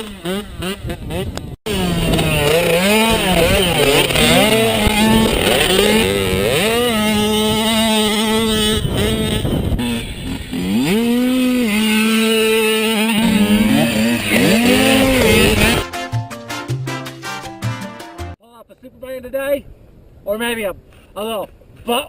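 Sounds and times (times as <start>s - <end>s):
mini motorcycle engine revving: 0.0s - 15.8s.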